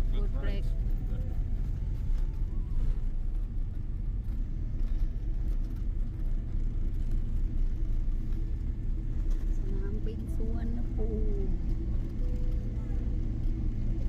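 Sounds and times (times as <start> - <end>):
airliner cabin rumble: 0.0 - 14.0.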